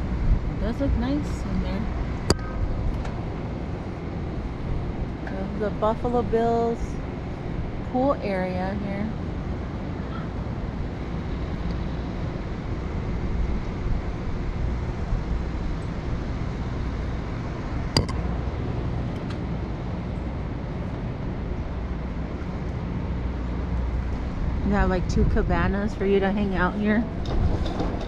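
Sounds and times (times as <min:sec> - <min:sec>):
low outdoor rumble: 0:00.0 - 0:28.0
sharp click: 0:18.0 - 0:18.2.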